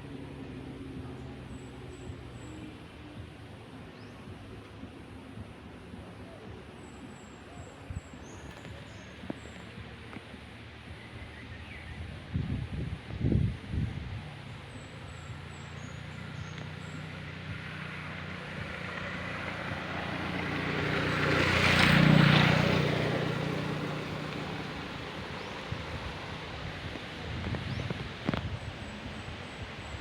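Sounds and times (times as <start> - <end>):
vehicle engine passing by: 14.1 - 30.0.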